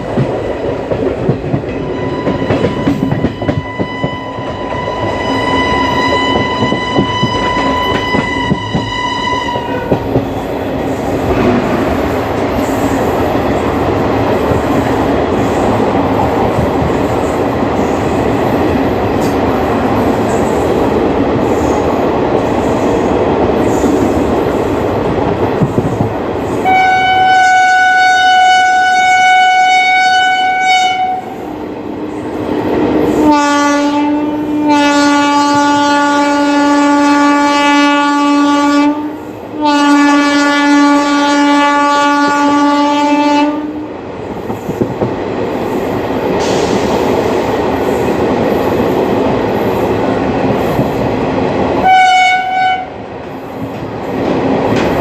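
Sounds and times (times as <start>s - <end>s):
train coach rumbling over track: 0.0s - 55.0s
locomotive horn blasts: 1.8s - 10.1s, 26.6s - 31.4s, 33.2s - 43.9s, 51.8s - 53.0s.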